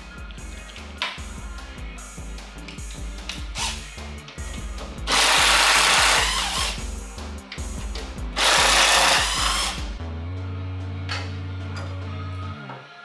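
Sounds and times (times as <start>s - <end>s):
background music: 0.0s - 13.0s
power tool running: 5.1s - 6.8s, 8.4s - 9.9s.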